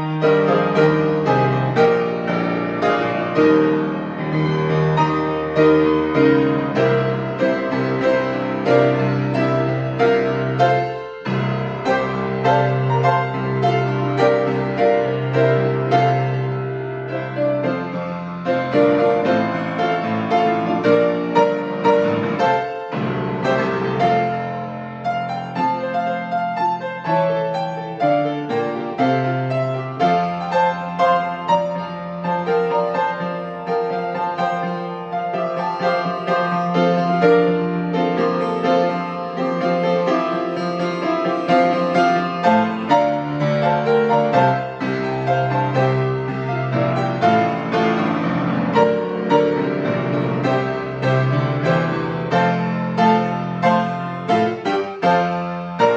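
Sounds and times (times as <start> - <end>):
solo piano playing a hymn: 0.0 - 55.9.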